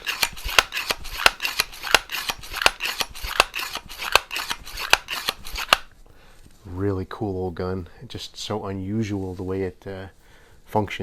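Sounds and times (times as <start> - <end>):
air rifle pump clicking: 0.0 - 5.9.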